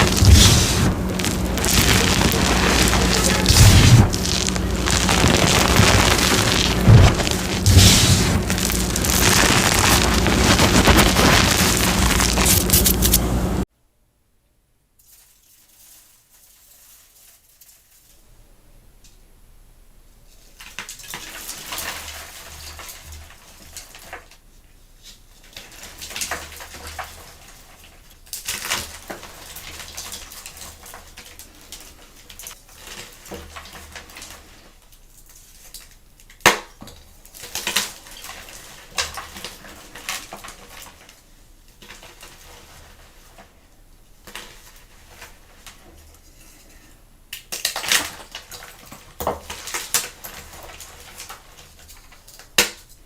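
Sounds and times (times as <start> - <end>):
chalk blocks crunching and crumbling: 0.0 - 13.2
chalk snapping: 0.0 - 13.2.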